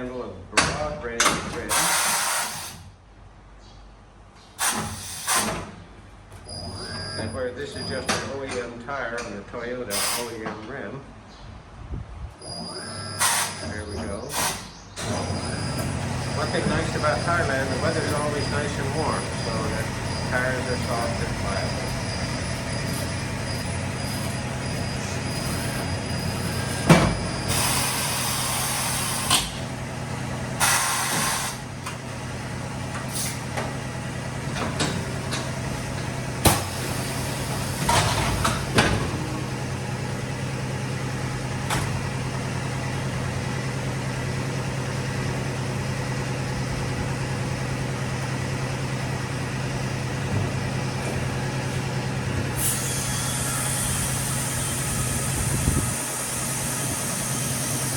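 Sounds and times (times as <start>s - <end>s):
tire changing machine humming: 1.6s - 3.1s, 4.4s - 8.7s, 12.3s - 57.9s
compressed air hisses: 52.6s - 57.9s.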